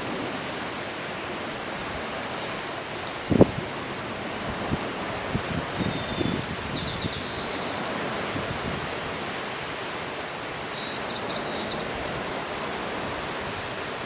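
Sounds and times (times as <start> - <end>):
bird twittering call: 5.8 - 7.9, 10.2 - 11.9.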